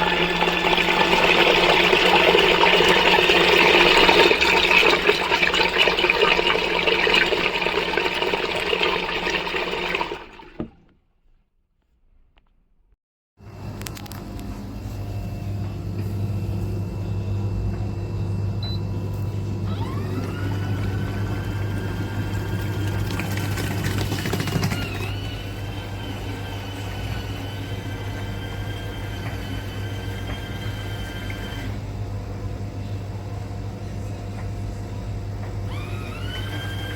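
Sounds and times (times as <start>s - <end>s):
motor whine: 13.4s - 32.0s, 35.5s - 36.9s.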